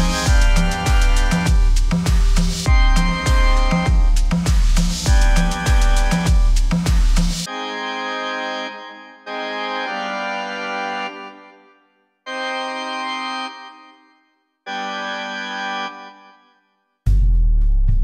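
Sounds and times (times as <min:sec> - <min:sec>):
organ-like keyboard chords: 0:00.0 - 0:06.8, 0:07.5 - 0:16.6
electronic drum music: 0:00.0 - 0:07.5, 0:17.1 - 0:18.0.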